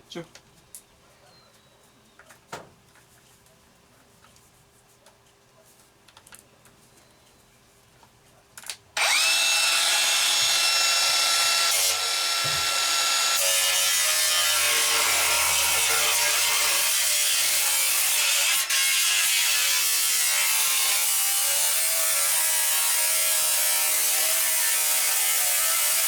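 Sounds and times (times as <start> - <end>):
angle grinder cutting metal: 9.0 - 26.0.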